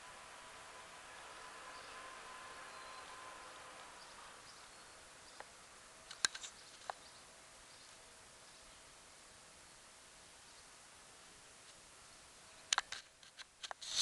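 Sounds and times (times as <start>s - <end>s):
faint hum: 0.0s - 14.0s
faint steady hiss: 0.0s - 14.0s
sharp clicks: 6.1s - 7.0s.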